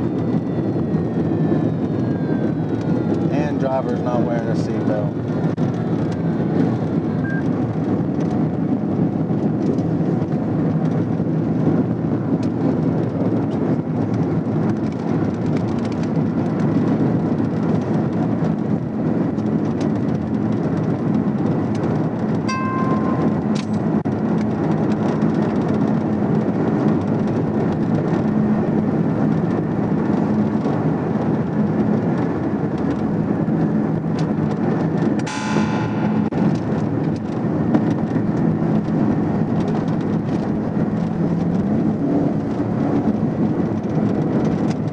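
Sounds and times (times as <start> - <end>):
road and wind noise inside car: 0.0 - 44.9
short electronic beep: 7.2 - 7.4.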